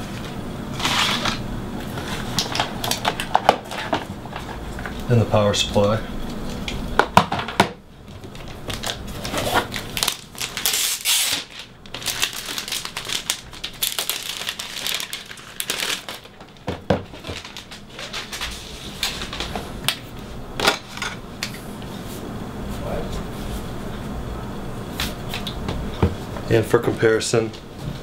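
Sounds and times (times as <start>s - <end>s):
wrapping crinkling and rustling: 8.1s - 20.1s.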